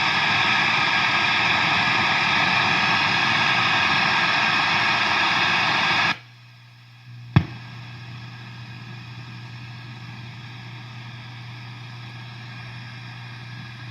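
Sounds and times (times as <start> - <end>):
guitar amp static hiss: 0.0 - 6.3, 6.9 - 13.9
amp low hum: 0.0 - 13.9
sharp pop: 7.4 - 7.6.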